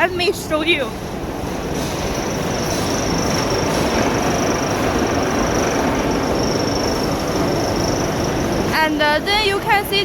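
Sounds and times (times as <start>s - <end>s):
furnace machinery noise: 0.0s - 10.0s
high-pitched whine: 1.5s - 10.0s.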